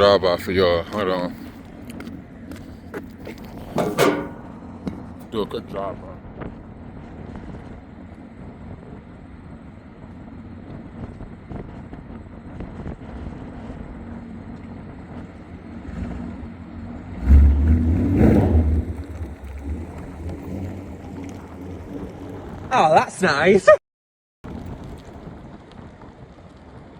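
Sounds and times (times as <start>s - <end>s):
car engine driving past: 15.5s - 22.8s
loud deep exhaust burst: 15.6s - 22.7s.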